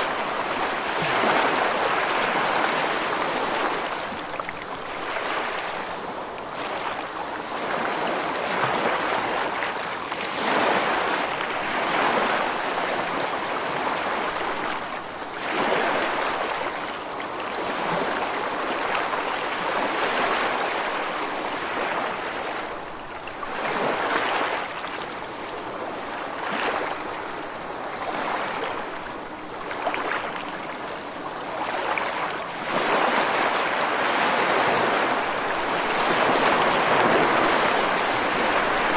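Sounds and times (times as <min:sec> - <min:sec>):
ocean waves washing: 0:00.0 - 0:14.8, 0:23.6 - 0:38.9.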